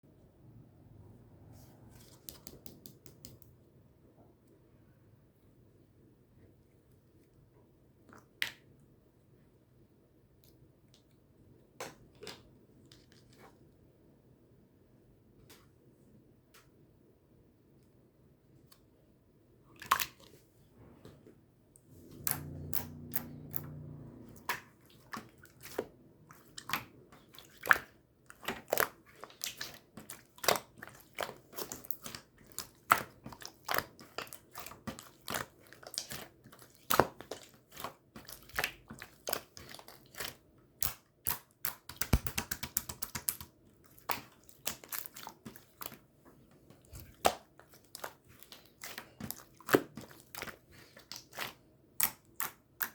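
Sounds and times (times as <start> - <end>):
low hum: 21.9 - 24.5.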